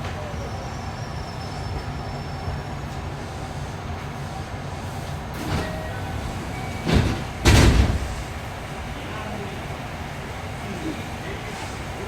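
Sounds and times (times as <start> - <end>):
train car rumble: 0.0 - 12.0
loud sudden knock: 6.9 - 8.2.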